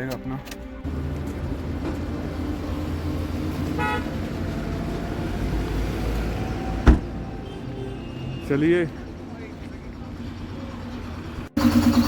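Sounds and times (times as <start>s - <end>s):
road traffic engines: 0.0s - 12.0s
vehicle horn toot: 3.7s - 4.2s, 7.4s - 8.7s.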